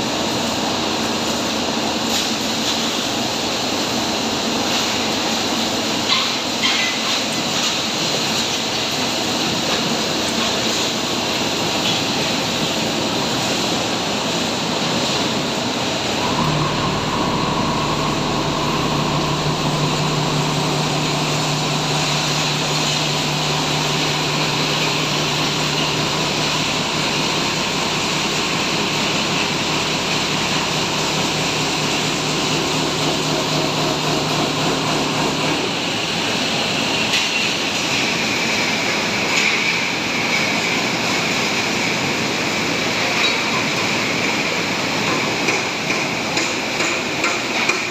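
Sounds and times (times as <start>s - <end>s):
hammer mill rushing noise: 14.9s - 38.0s
steady low hum: 15.9s - 36.5s.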